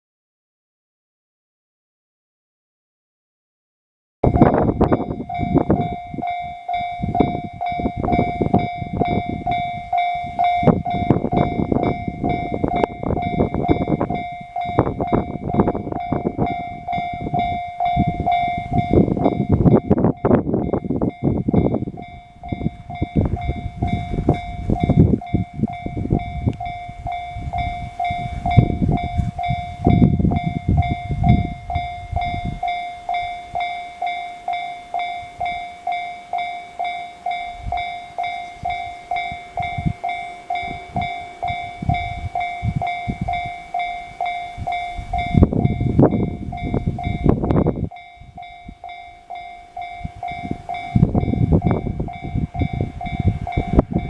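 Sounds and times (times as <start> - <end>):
heavy low rumbling: 4.2 - 33.8, 36.6 - 54.0
level-crossing alarm clanging: 4.2 - 54.0.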